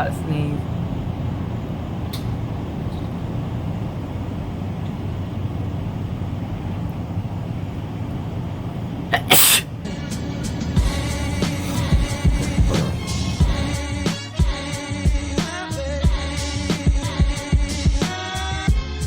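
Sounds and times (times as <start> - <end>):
woman sneezing: 9.2 - 9.7
car cabin low rumble: 9.8 - 13.9.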